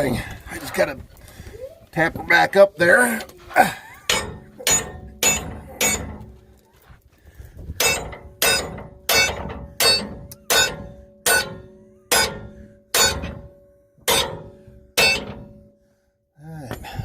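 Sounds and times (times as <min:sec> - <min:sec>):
hammer striking steel blade: 0:04.1 - 0:06.2, 0:07.8 - 0:13.5, 0:14.1 - 0:15.6.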